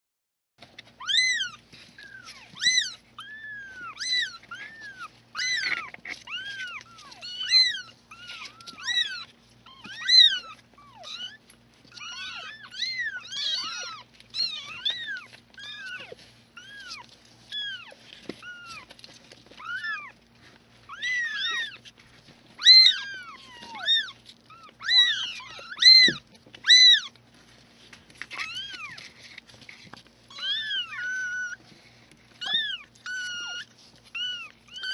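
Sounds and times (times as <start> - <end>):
kittens mewing: 1.0 - 20.2, 20.8 - 27.2.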